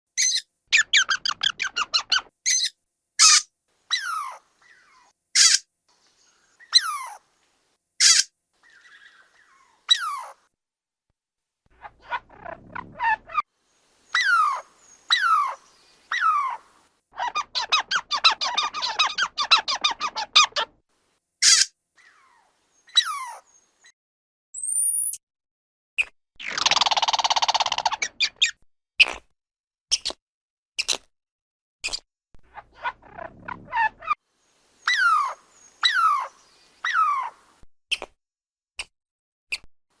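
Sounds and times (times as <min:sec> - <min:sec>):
squirrel squeaking and chattering: 0:00.2 - 0:05.6, 0:06.6 - 0:07.2, 0:08.0 - 0:10.4, 0:14.1 - 0:20.7, 0:21.4 - 0:21.7, 0:22.9 - 0:23.4, 0:26.5 - 0:28.6, 0:34.8 - 0:38.1.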